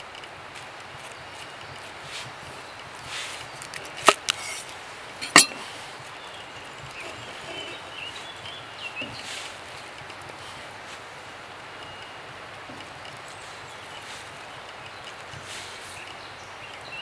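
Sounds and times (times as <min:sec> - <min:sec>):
outdoor background: 0:00.0 - 0:17.0.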